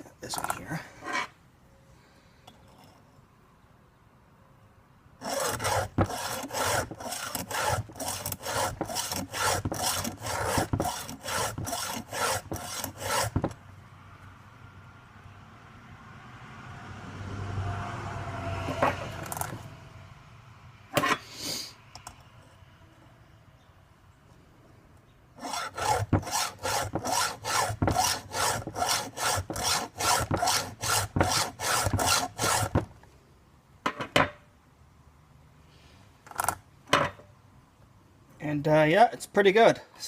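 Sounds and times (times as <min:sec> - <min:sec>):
file rasping on chainsaw chain: 0:05.2 - 0:13.5, 0:25.4 - 0:32.8.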